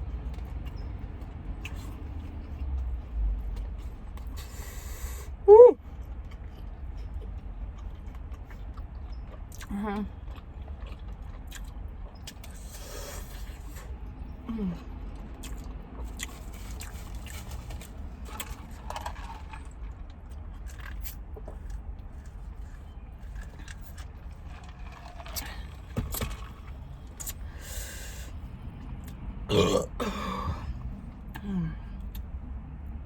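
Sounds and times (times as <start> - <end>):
chewing and wet mouth clicks: 5.9 - 14.0, 14.9 - 25.6, 26.6 - 27.5
loud burp: 29.5 - 30.7.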